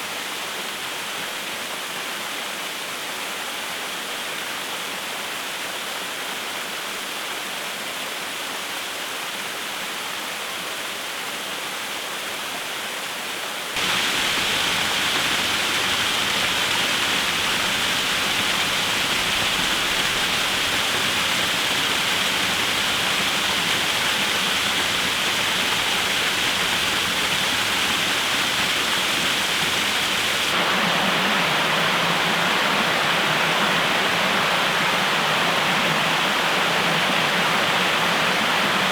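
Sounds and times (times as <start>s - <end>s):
waterfall rushing: 13.8s - 38.9s.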